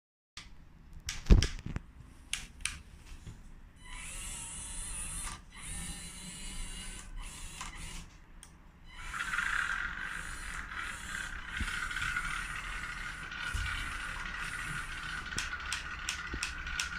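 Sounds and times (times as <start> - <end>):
hydraulic pump whining: 9.0 - 16.9.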